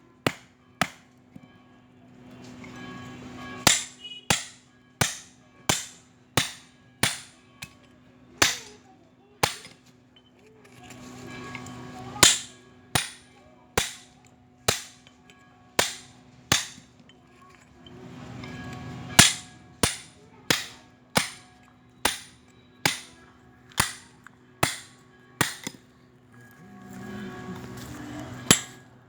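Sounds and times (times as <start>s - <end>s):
hammer striking steel casing: 0.3s - 1.1s, 3.6s - 7.8s, 8.4s - 8.8s, 9.4s - 9.8s, 11.4s - 15.2s, 15.8s - 17.0s, 18.4s - 25.8s, 28.5s - 28.9s.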